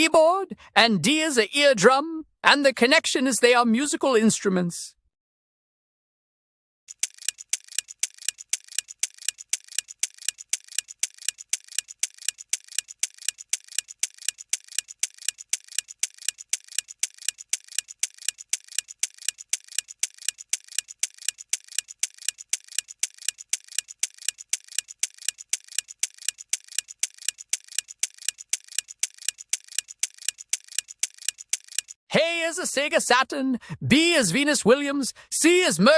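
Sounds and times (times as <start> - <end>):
clock ticking: 6.9 - 32.0.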